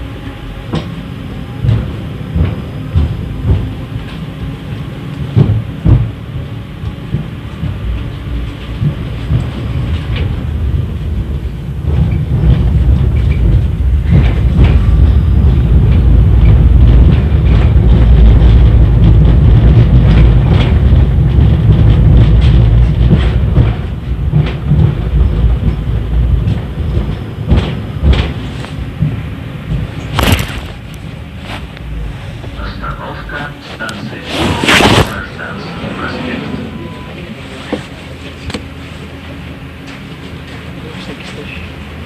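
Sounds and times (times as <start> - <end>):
tram rumbling: 0.0 - 42.0
wheels knocking and clattering: 1.6 - 4.3, 5.2 - 31.0.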